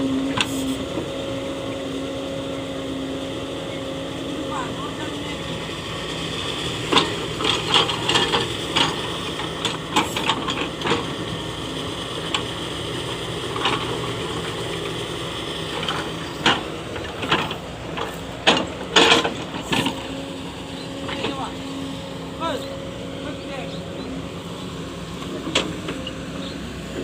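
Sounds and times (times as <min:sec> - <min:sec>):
diesel engine droning: 0:00.0 - 0:27.0
sharp knocks and clanks: 0:15.8 - 0:20.0.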